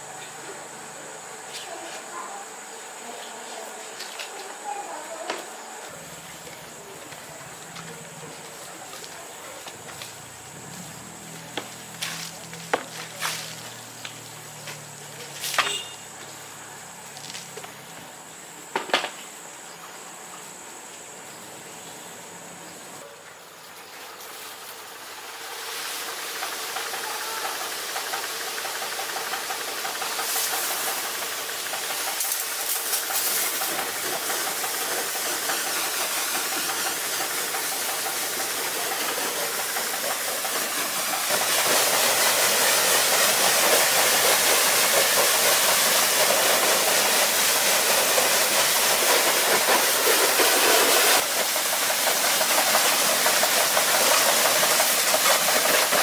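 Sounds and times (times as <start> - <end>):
loud pressurized hiss: 24.4 - 56.0.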